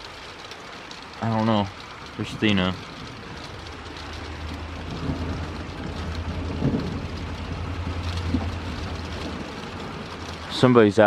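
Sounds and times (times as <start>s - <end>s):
steady rain falling: 0.0s - 11.0s
rolling thunder: 2.2s - 10.7s.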